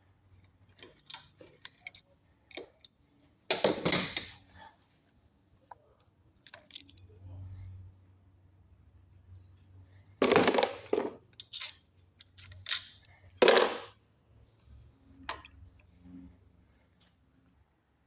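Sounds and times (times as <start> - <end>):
metal hand tools clinking: 11.3 - 13.9.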